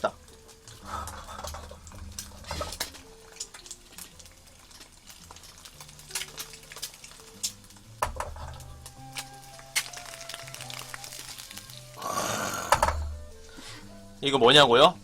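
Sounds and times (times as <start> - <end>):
eggs frying in oil: 0.0 - 15.0
oil popping and crackling: 0.0 - 15.0
utensil clinking on pan: 6.4 - 9.3.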